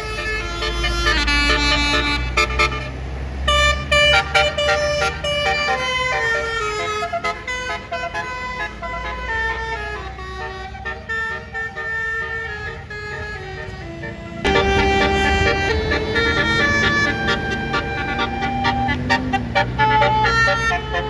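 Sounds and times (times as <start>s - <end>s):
bus melody horn playing a tune: 0.0s - 21.0s
low engine rumble: 14.4s - 21.0s.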